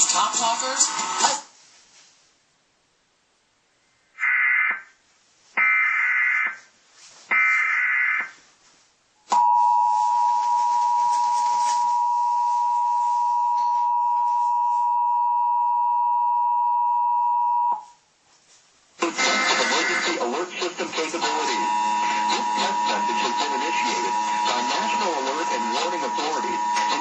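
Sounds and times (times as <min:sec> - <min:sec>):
two-tone attention signal: 0:09.4 - 0:17.8, 0:21.2 - 0:27.0.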